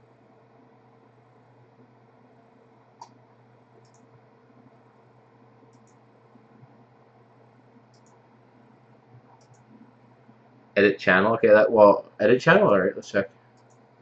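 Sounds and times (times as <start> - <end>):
low steady hum: 0.0 - 14.0
faint computer mouse clicks: 3.8 - 4.1, 5.7 - 6.0, 7.9 - 8.2, 9.2 - 9.9, 13.5 - 13.8.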